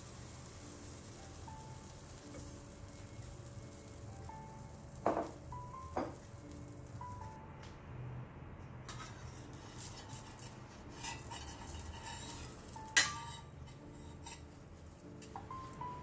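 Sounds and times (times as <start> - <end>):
utensils clinking against dishes: 8.9 - 15.5.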